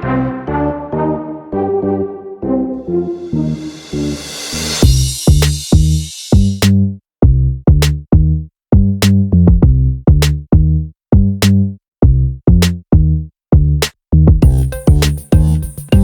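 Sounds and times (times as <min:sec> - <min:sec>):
electronic music with drum beat: 0:03.4 - 0:06.7, 0:14.4 - 0:16.0.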